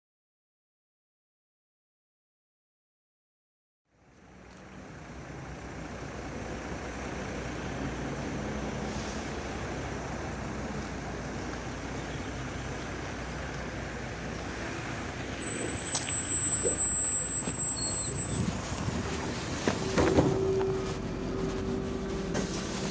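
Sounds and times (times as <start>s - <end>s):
bus engine hum: 3.9s - 22.9s
road noise: 3.9s - 22.9s
thin high tone: 14.4s - 18.6s.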